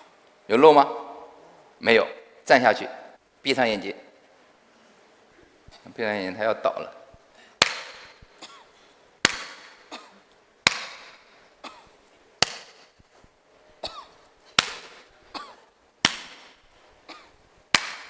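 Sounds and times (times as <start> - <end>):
sharp hand claps: 7.6 - 8.3, 9.2 - 9.9, 10.6 - 11.4, 12.4 - 13.1, 14.6 - 15.1, 16.0 - 16.7, 17.7 - 18.0
person coughing: 8.4 - 8.8, 9.9 - 10.3, 11.6 - 12.0, 13.8 - 14.3, 15.2 - 15.7, 17.1 - 17.4.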